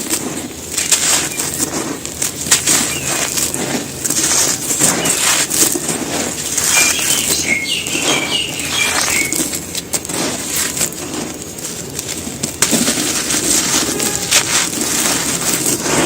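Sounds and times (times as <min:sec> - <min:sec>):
bird chirping: 0:01.1 - 0:01.8, 0:02.6 - 0:05.5, 0:06.4 - 0:09.8.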